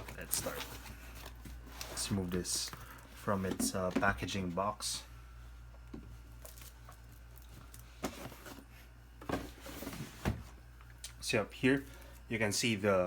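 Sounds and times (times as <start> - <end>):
box rustling and scraping: 0.0 - 4.2, 7.6 - 10.6.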